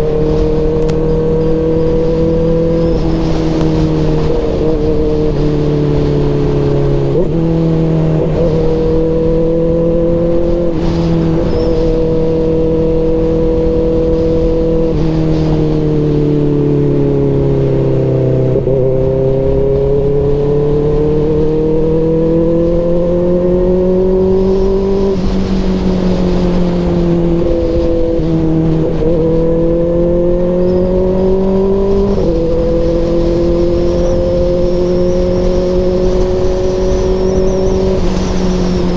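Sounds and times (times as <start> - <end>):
motorcycle engine at mid revs: 0.0 - 3.6.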